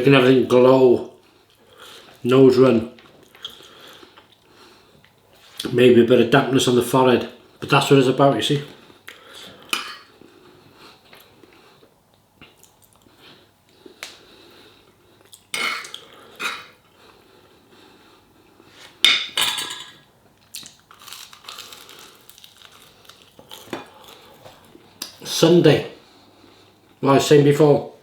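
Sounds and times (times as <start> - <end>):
cutlery clinking on a plate: 19.1 - 20.0.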